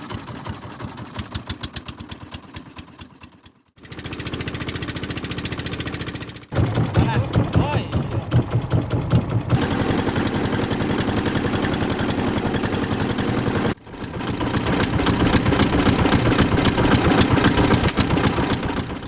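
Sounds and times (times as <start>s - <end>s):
boat engine chugging: 0.0s - 19.0s.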